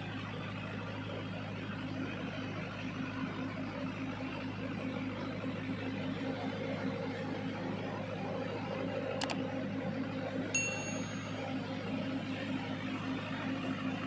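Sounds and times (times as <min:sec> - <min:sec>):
click: 0:09.2 - 0:09.4
short high ding: 0:10.5 - 0:11.8
ship engine drone: 0:10.6 - 0:14.0.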